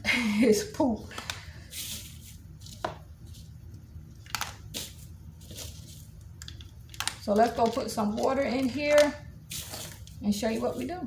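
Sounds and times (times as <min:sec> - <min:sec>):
low steady hum: 0:00.0 - 0:11.0
handling taps and rustles: 0:01.1 - 0:11.0.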